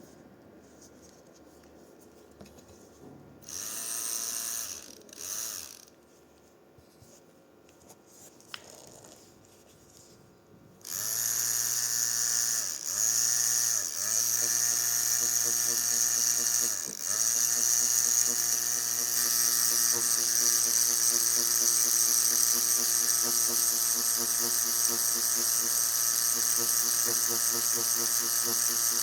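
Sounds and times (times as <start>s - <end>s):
tattoo machine buzzing: 3.4s - 5.9s, 10.8s - 29.0s.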